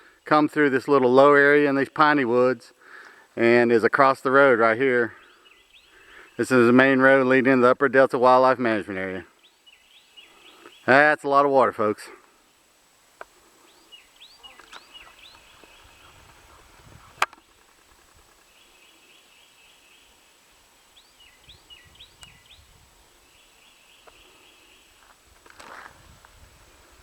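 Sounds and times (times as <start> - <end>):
birds chirping: 2.8 - 25.1
sharp click: 17.2 - 17.4.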